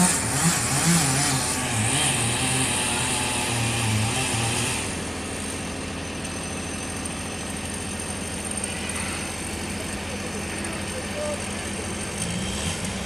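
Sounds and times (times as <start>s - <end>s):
engine idling: 4.8s - 13.0s.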